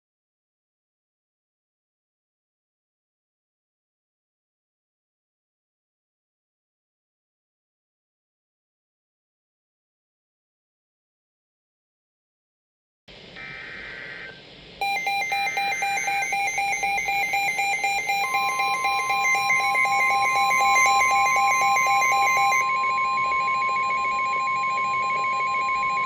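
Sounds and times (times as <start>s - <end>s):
warbling data bursts: 13.4s - 22.6s
rapid electronic beeping: 13.4s - 26.0s
steady warning alarm tone: 13.4s - 26.0s.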